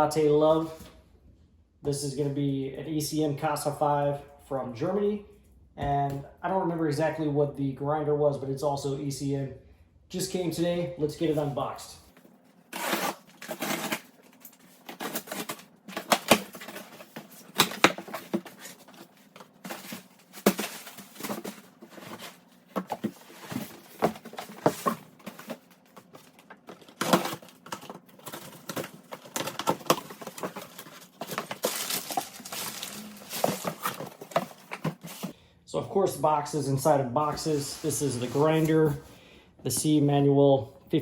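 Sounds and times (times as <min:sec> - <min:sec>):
cardboard box being unpacked: 0:12.7 - 0:35.3.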